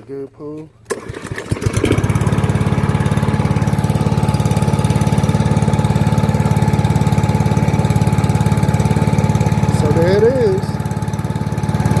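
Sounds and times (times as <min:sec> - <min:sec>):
lawn mower engine running: 0:00.8 - 0:12.0.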